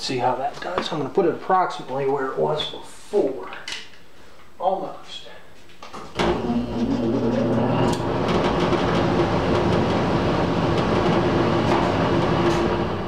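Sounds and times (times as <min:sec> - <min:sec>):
blower rushing air: 0:06.2 - 0:13.0
low motor hum: 0:06.2 - 0:13.0.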